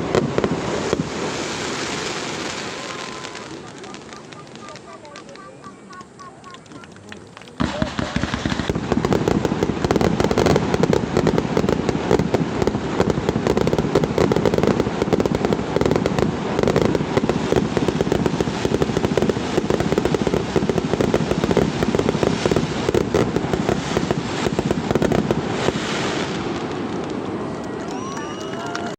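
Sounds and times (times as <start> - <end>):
fireworks bursting: 0.0 - 28.9.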